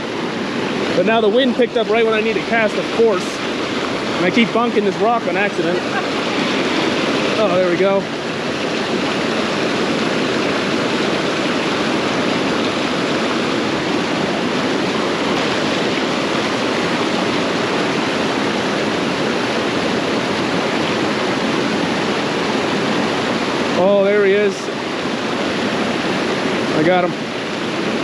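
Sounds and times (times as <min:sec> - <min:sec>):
creek water rushing: 0:00.0 - 0:28.0.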